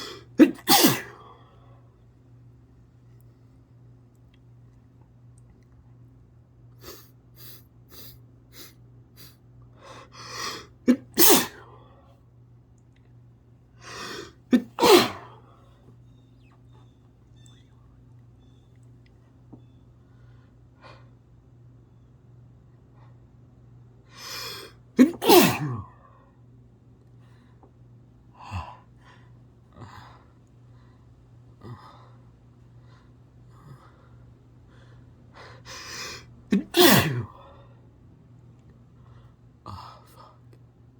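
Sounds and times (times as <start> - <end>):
person sneezing: 0.0 - 1.3, 10.2 - 11.8, 13.8 - 15.4, 24.2 - 25.9, 35.7 - 37.5
person gasping breaths: 28.4 - 37.8.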